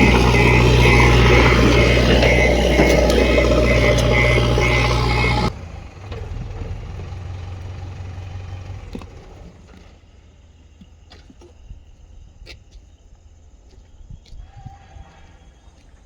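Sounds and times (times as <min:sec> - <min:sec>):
diesel engine running: 0:00.0 - 0:08.9.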